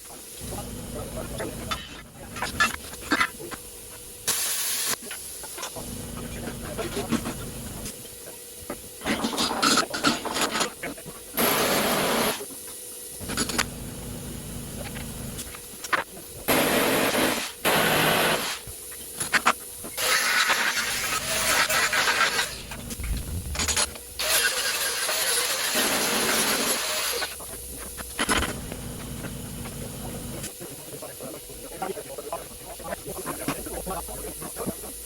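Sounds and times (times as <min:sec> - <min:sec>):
hissing bursts: 0:00.4 - 0:08.1, 0:16.5 - 0:18.9, 0:19.9 - 0:27.4.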